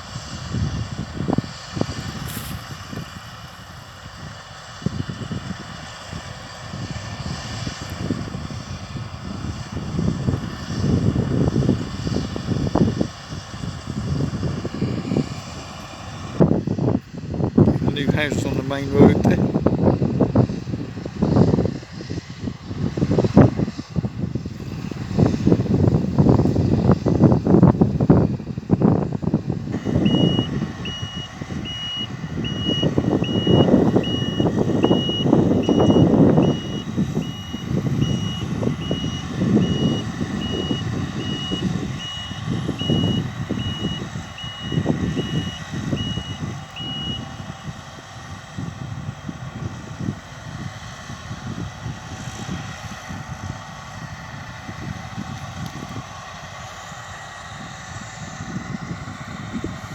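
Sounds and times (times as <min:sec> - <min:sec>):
low machinery rumble: 0:00.0 - 0:59.9
wind noise: 0:00.0 - 0:59.9
vehicle reversing alarm beeping: 0:17.8 - 0:19.4, 0:29.7 - 0:47.8.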